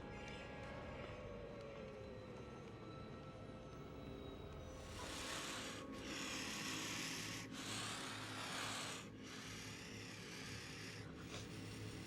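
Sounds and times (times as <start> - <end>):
rasping hiss: 4.8 - 12.0.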